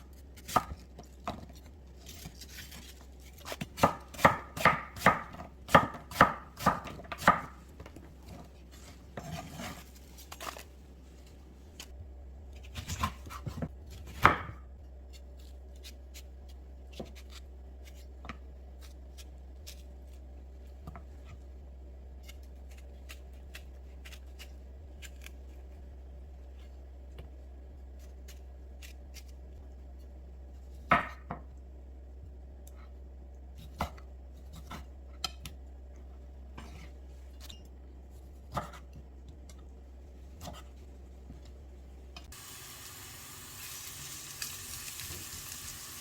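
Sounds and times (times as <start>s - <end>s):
knife chopping on cutting board: 3.4s - 7.6s, 12.8s - 14.6s, 38.5s - 38.9s.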